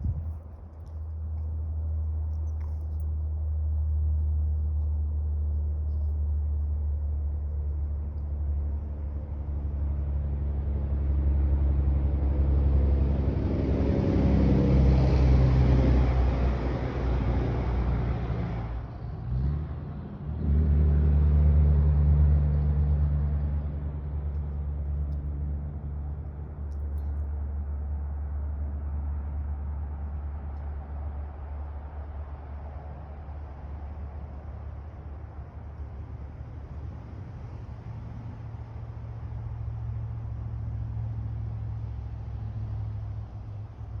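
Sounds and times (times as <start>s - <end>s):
road noise: 0.0s - 44.0s
car engine hum: 21.1s - 44.0s.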